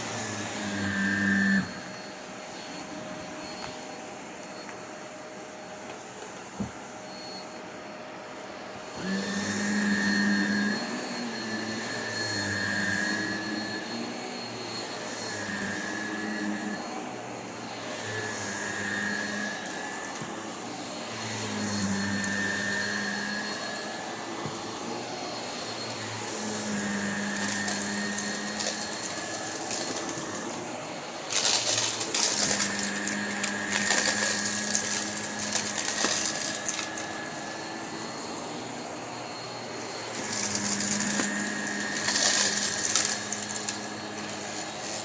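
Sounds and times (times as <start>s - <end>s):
vacuum cleaner running: 0.0s - 45.0s
debris crackling in vacuum: 31.3s - 37.2s, 40.1s - 44.6s.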